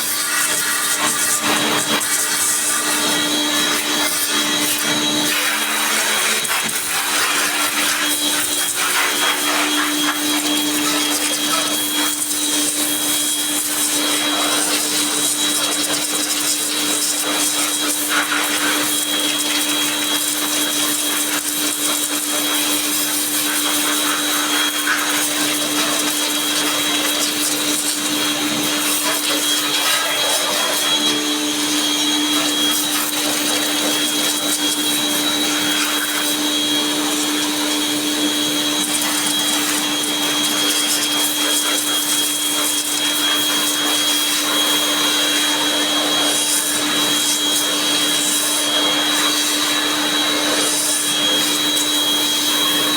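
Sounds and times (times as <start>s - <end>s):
vacuum cleaner motor whining: 0.0s - 52.9s.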